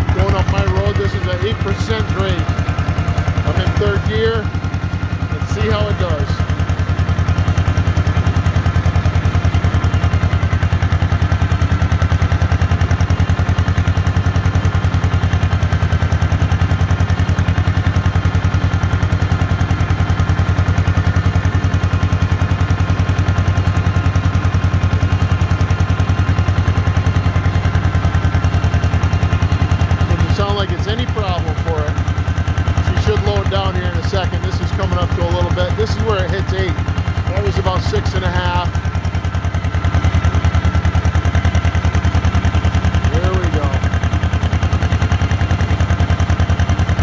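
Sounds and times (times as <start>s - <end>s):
fast exhaust beats: 0.0s - 47.0s
tractor engine pulling uphill: 0.0s - 47.0s.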